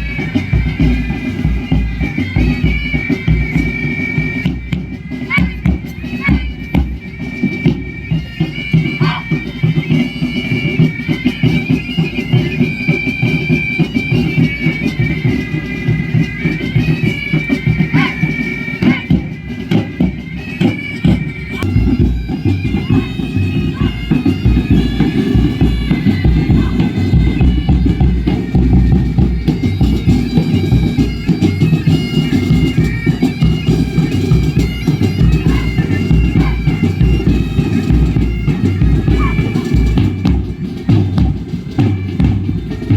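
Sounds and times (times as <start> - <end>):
wind instrument melody: 0.0 - 42.9
low drum beats: 21.0 - 42.9.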